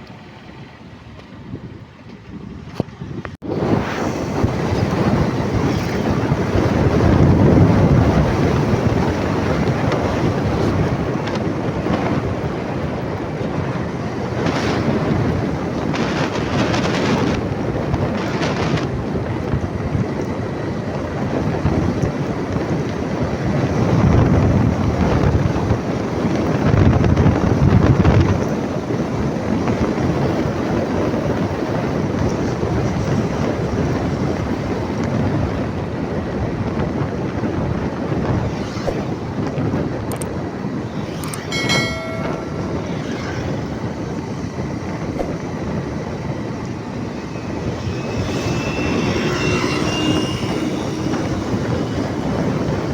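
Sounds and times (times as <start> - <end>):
moving vehicle rumble: 0.0 - 52.9
wind noise on microphone: 0.0 - 52.9
horn-like tone: 41.0 - 43.8, 47.3 - 52.5.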